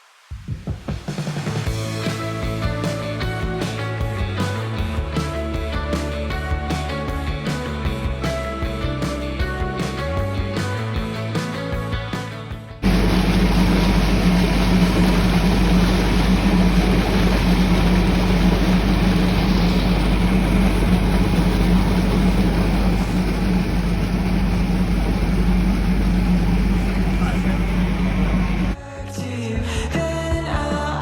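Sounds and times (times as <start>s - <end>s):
ship engine droning: 12.8s - 28.8s.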